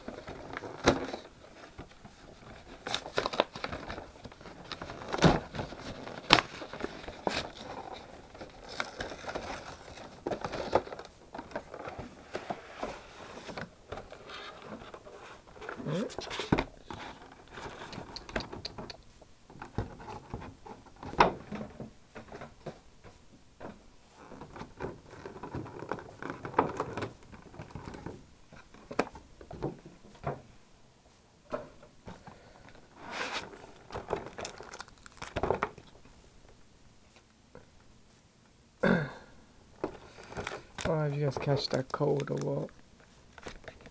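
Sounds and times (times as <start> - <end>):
packaging rustling: 0.0 - 18.8, 32.7 - 36.0, 39.8 - 43.9.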